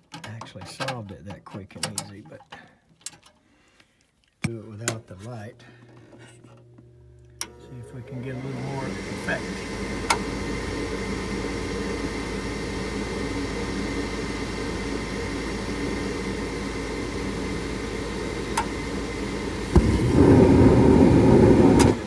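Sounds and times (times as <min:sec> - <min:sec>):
gas furnace humming: 0:04.7 - 0:22.0
rough rumble: 0:19.6 - 0:22.0.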